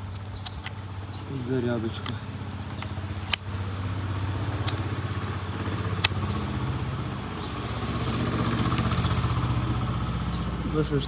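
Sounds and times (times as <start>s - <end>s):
sharp clicks: 0.0s - 0.9s, 1.9s - 9.4s
engine idling: 0.0s - 11.0s.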